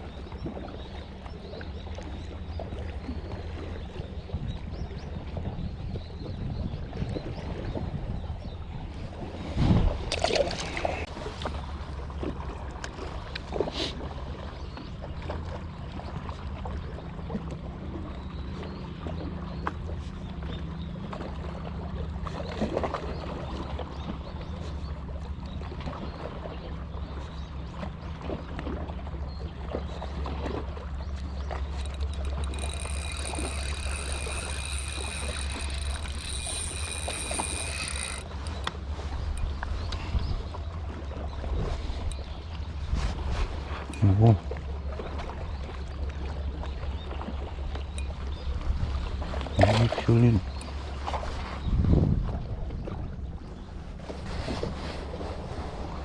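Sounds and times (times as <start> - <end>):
boat engine droning: 0.0 - 56.0.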